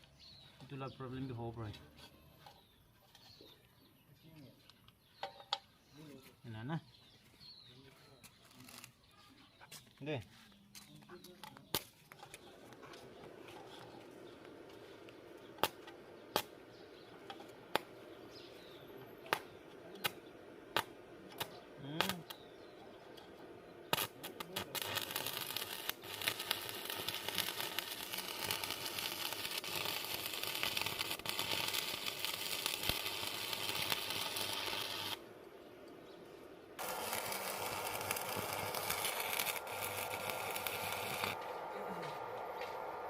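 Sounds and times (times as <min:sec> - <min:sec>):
arc welding crackling hiss: 0:14.8 - 0:16.7, 0:19.2 - 0:22.4, 0:23.9 - 0:35.3, 0:36.8 - 0:42.2.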